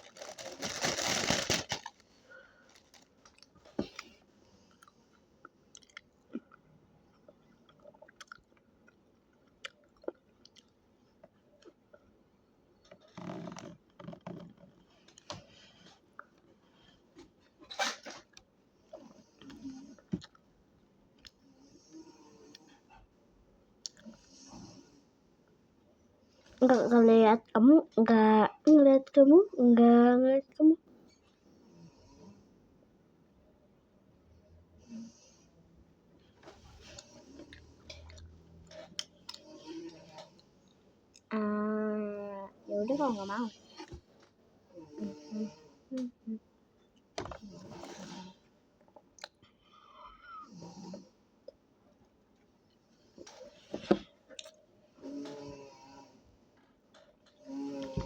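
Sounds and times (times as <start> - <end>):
person snoring: 55.0 - 56.2, 57.4 - 58.0.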